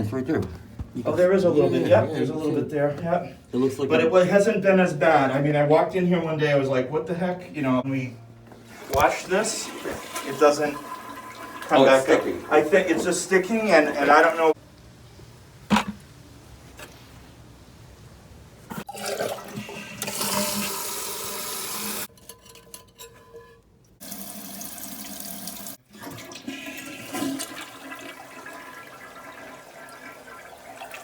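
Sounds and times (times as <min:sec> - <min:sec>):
toilet flushing: 0:08.6 - 0:14.6, 0:18.7 - 0:22.1, 0:24.0 - 0:31.0.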